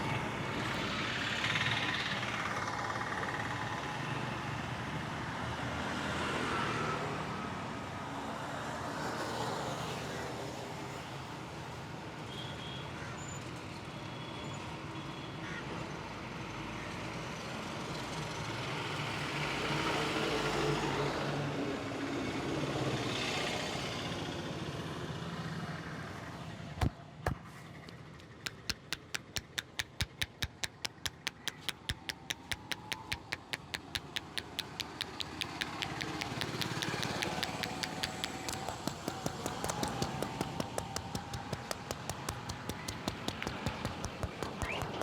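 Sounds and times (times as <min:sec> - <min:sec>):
street traffic: 0:26.5 - 0:45.0
rapid hand slaps: 0:26.8 - 0:45.0
sharp cracks: 0:26.8 - 0:45.0.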